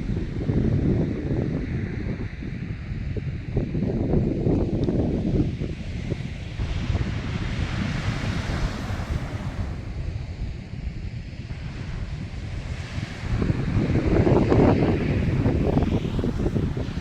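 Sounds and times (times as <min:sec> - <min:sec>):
wind rumbling on microphone: 0:00.0 - 0:17.0
sea waves washing: 0:05.6 - 0:17.0.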